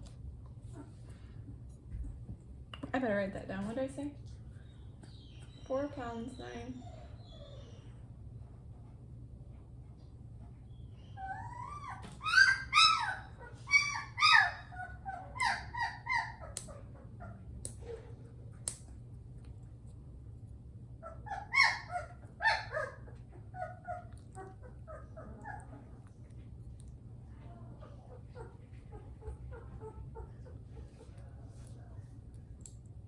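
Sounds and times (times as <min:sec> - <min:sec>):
puppy crying and yelping: 0:06.7 - 0:08.0, 0:11.0 - 0:18.1, 0:21.0 - 0:26.1, 0:27.8 - 0:31.1.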